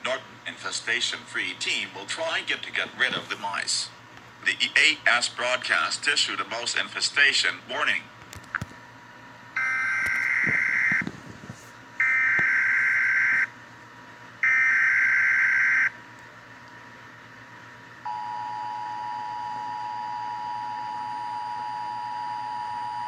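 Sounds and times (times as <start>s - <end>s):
harsh buzzing digital squawks: 9.6s - 11.0s, 14.4s - 15.9s
two-tone alarm: 9.6s - 11.0s, 12.0s - 13.5s, 14.4s - 16.0s, 18.1s - 23.0s.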